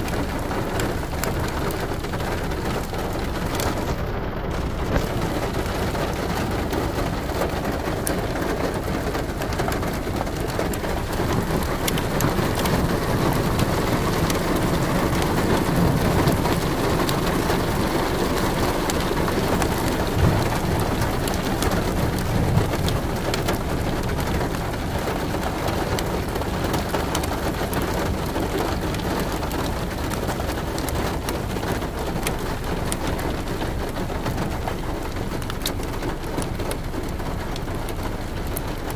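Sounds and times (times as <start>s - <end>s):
raindrops hitting a surface: 0.0s - 38.9s
steady rain: 0.0s - 38.9s
low rumble: 19.3s - 23.6s.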